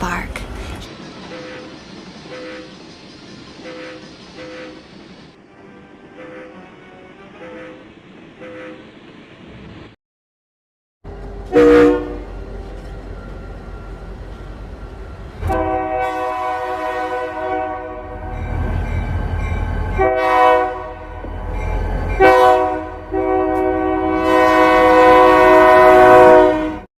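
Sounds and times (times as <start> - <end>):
freight train rumbling past: 0.0 - 10.0, 11.1 - 26.9
locomotive air horn blasts: 6.1 - 8.9, 11.4 - 12.4, 15.4 - 18.3, 20.0 - 21.1, 22.2 - 26.9.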